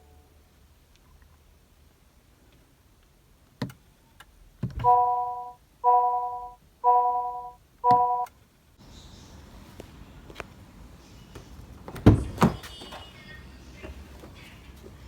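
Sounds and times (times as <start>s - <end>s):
electronic warning chime: 4.8s - 8.3s
car door thunks: 11.9s - 13.0s.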